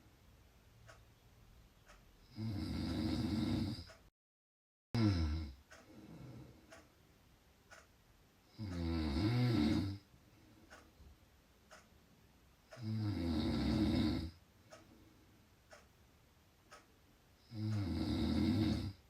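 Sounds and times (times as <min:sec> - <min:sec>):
person snoring: 0:02.2 - 0:03.9, 0:05.0 - 0:05.6, 0:08.5 - 0:10.0, 0:12.8 - 0:14.4, 0:17.4 - 0:19.0.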